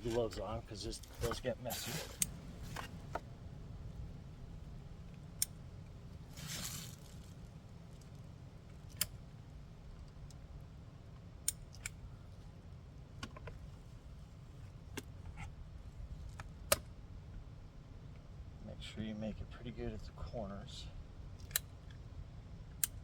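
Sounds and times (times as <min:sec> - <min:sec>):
gloves rustling: 0:00.0 - 0:03.2, 0:06.2 - 0:08.3
steady low hum: 0:00.0 - 0:23.0.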